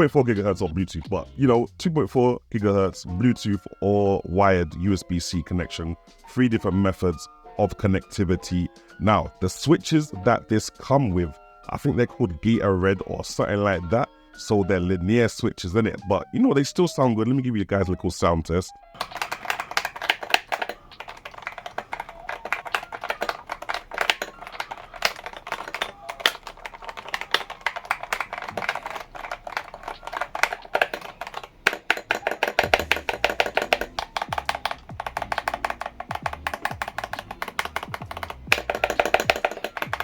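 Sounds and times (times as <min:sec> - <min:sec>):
fast mechanical keyboard typing: 0:19.0 - 0:40.0.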